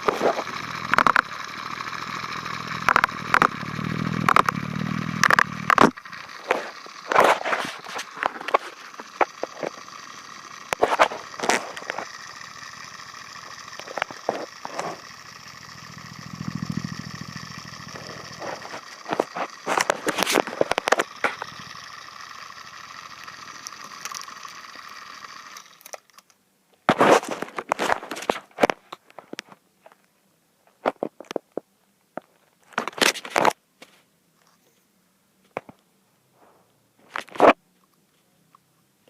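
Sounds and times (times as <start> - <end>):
small motor whining: 0.0 - 26.2.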